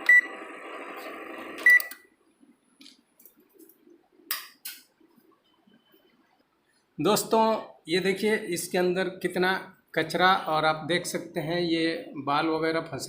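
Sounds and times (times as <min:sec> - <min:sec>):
microwave oven humming: 0:00.0 - 0:02.1
keypad beeps: 0:01.6 - 0:02.0.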